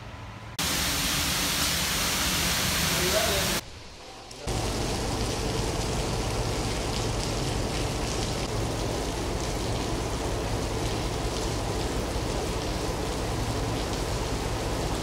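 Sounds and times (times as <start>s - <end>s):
running water hiss: 0.6s - 8.6s.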